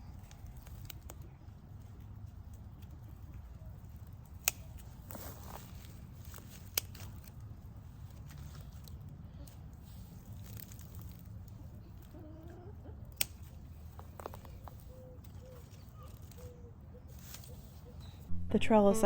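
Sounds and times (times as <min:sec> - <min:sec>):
steady low rumble: 0:18.2 - 0:19.0.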